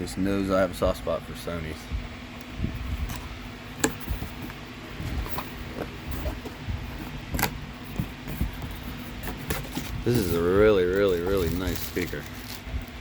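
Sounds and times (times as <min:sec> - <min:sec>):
steady low hum: 0:00.0 - 0:13.0
boxed speaker being handled: 0:02.7 - 0:13.0.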